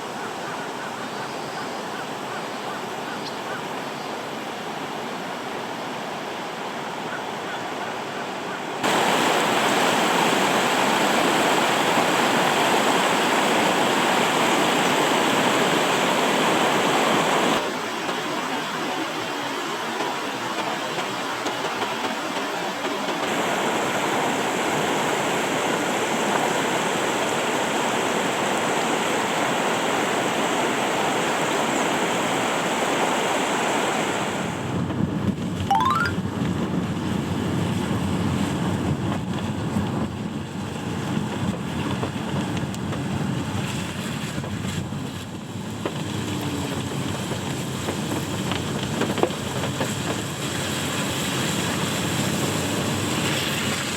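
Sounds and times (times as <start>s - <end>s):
stream rushing over rocks: 7.9s - 34.8s, 35.7s - 36.1s, 43.4s - 53.9s.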